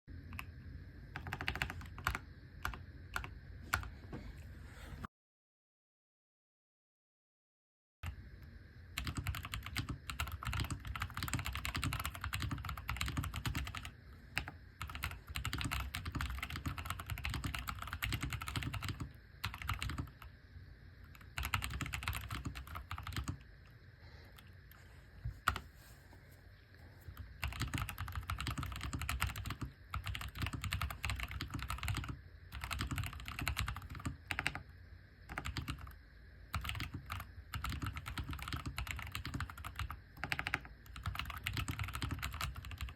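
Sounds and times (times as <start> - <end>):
mechanical keyboard typing: 1.2 - 3.9, 9.0 - 20.3, 21.1 - 23.4, 27.4 - 34.6, 35.3 - 42.9.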